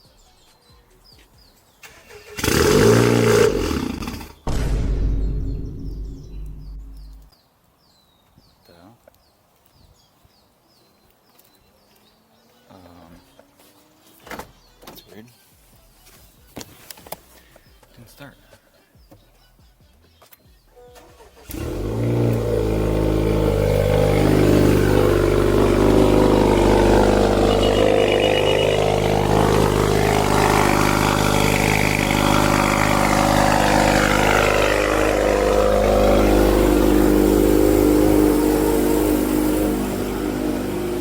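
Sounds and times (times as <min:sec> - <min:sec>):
car engine starting: 0:01.8 - 0:07.3, 0:20.9 - 0:41.0
loud car engine idling: 0:05.2 - 0:07.3, 0:21.5 - 0:41.0.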